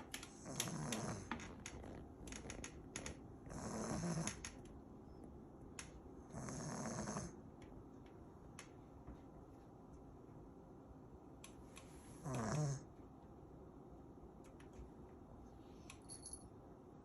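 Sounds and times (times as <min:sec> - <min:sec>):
dog snoring: 0:00.3 - 0:02.6, 0:03.4 - 0:04.6, 0:06.3 - 0:07.4, 0:12.2 - 0:12.9.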